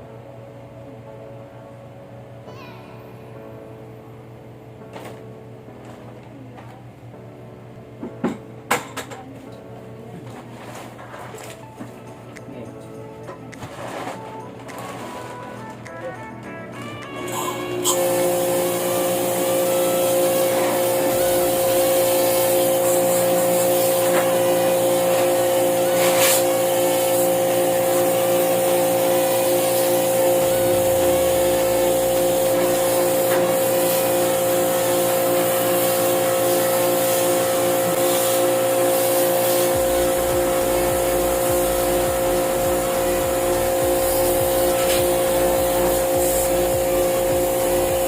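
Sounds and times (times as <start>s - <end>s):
electric motor whine: 17.3s - 48.0s
low hum: 30.1s - 32.9s, 39.7s - 48.0s.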